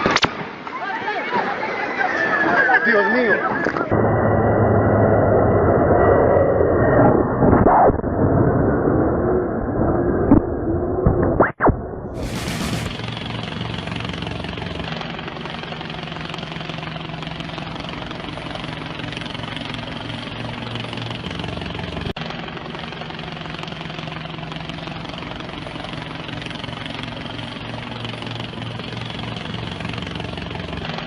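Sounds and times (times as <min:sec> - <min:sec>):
engine drone: 0:03.8 - 0:11.0, 0:12.1 - 0:31.0.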